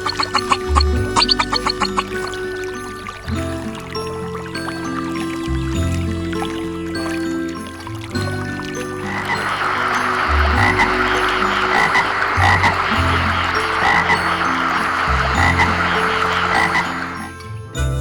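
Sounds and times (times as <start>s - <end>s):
chorus of frogs calling: 0.0s - 17.4s.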